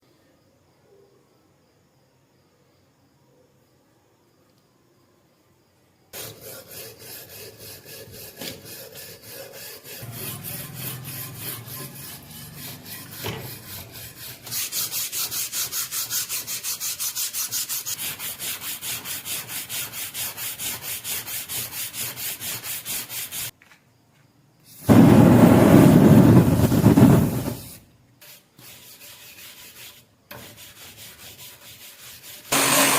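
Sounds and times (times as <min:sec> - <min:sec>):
knife blade scrubbed with abrasive: 0:06.2 - 0:23.5.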